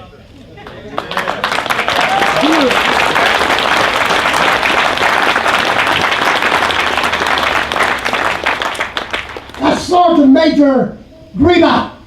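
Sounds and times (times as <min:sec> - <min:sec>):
audience applauding: 0:00.6 - 0:10.1.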